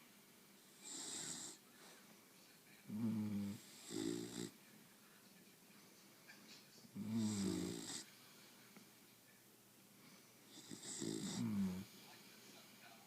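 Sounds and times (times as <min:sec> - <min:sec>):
person snoring: 0:07.0 - 0:08.0, 0:10.6 - 0:11.9.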